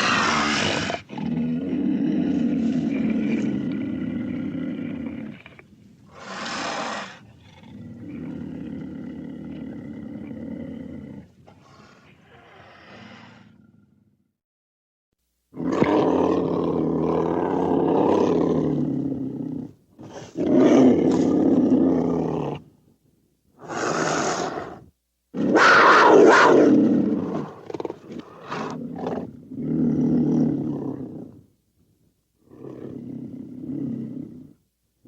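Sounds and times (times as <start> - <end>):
cougar calling: 0.0 - 1.3, 25.4 - 29.3.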